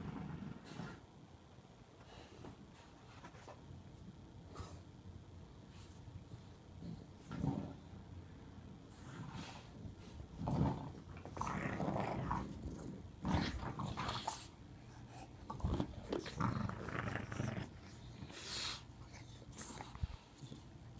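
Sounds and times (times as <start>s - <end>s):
dogs growling in play: 0.0s - 1.1s, 6.8s - 8.1s, 8.9s - 20.9s.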